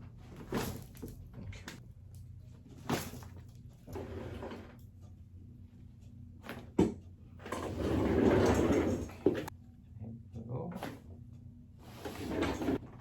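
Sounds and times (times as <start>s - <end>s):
clothes and padding rustling: 0.0s - 1.8s, 2.5s - 4.7s.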